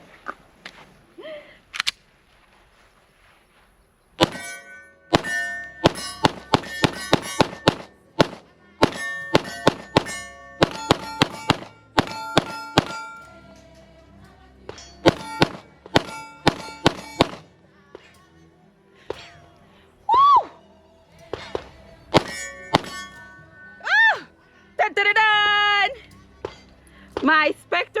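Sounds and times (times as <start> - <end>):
pistol gunshots: 4.2 - 13.2, 14.8 - 17.5, 21.4 - 23.2
steel targets ringing: 4.2 - 14.0, 14.7 - 17.6, 22.1 - 24.0.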